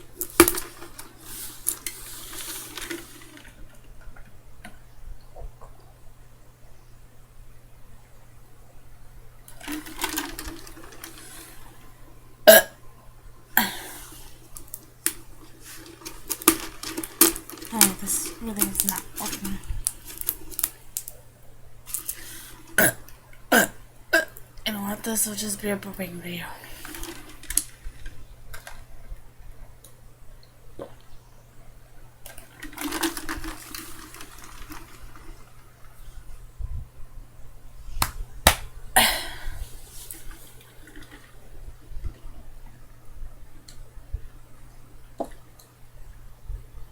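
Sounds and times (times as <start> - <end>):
person burping: 12.5 - 12.8, 13.6 - 14.0, 22.8 - 24.4, 39.0 - 39.6.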